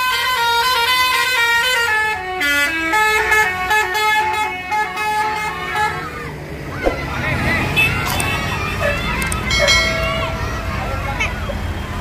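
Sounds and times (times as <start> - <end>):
multi-tone bus horn melody: 0.0 - 6.3.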